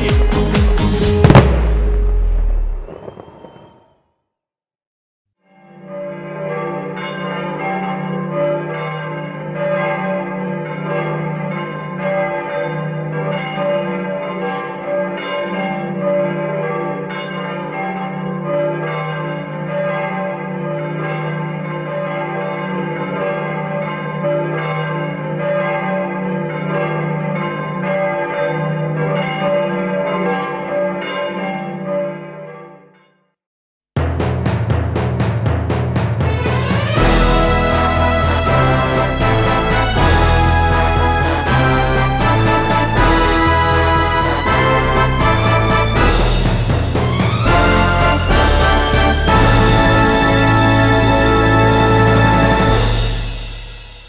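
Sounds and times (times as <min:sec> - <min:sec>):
steady low tone: 0:01.3 - 0:03.8
church bells pealing: 0:05.7 - 0:32.6, 0:37.0 - 0:53.5.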